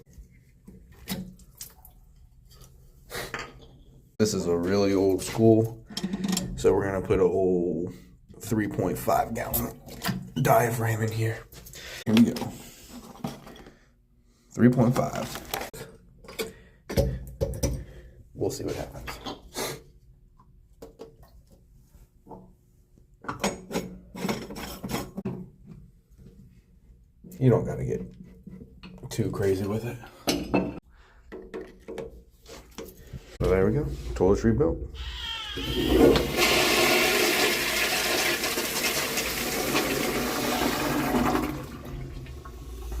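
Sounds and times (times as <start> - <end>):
toilet flushing: 35.6 - 43.0.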